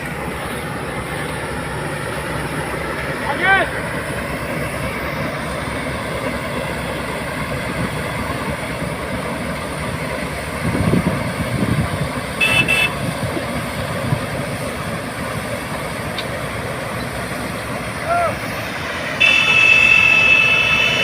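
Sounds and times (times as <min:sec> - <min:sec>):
combine harvester running: 0:00.0 - 0:21.0
short high-pitched beep: 0:19.2 - 0:21.0.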